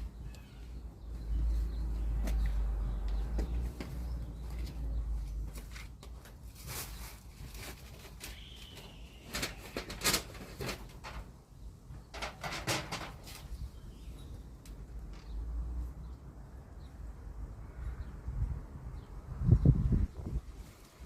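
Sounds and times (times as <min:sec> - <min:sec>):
rustles and clicks of handwork: 0:01.5 - 0:13.6
low wind rumble: 0:11.0 - 0:21.0.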